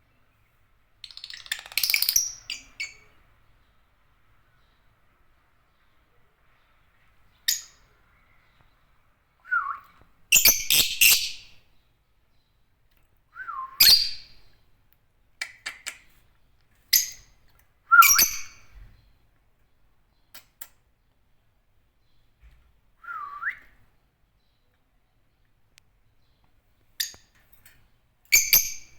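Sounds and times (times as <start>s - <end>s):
lovebirds chirping and squawking: 1.0s - 3.2s, 7.3s - 8.9s, 10.3s - 11.6s, 13.8s - 14.6s, 15.4s - 17.3s, 18.0s - 19.2s, 28.3s - 28.9s.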